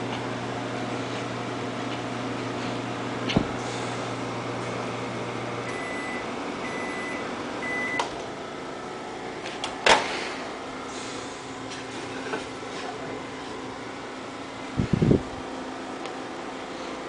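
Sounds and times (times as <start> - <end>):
microwave oven humming: 0.0 - 17.0
microwave long beeps: 5.0 - 8.2.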